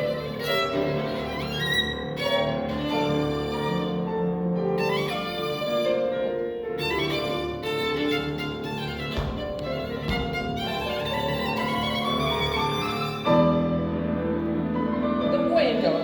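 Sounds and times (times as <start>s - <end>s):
violin playing: 0.0s - 16.0s
brief knocks: 9.1s - 10.9s.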